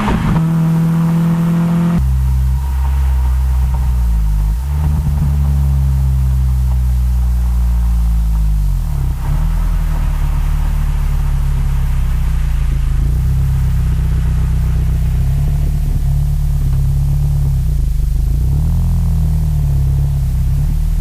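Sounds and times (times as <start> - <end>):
car exhaust at low revs: 0.0 - 21.0.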